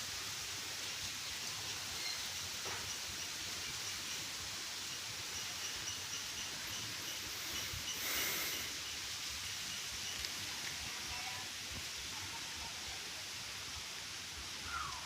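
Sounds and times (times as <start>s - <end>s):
steady hiss-like background: 0.0s - 15.0s
faint high chirps: 1.5s - 3.9s.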